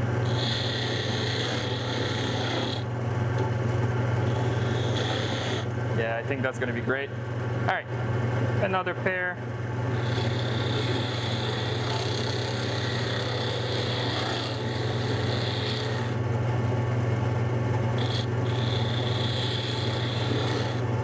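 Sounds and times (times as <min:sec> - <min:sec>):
turning tool scraping wood: 0:00.0 - 0:06.0, 0:09.9 - 0:16.4, 0:17.8 - 0:21.0
wood lathe motor hum: 0:00.0 - 0:06.1, 0:09.8 - 0:21.0.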